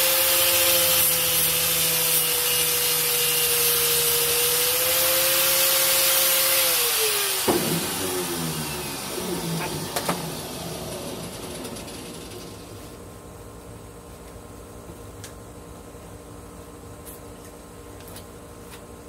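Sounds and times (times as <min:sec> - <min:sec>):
power tool abrading metal: 0:00.0 - 0:12.9
sharp knock: 0:07.5 - 0:08.0.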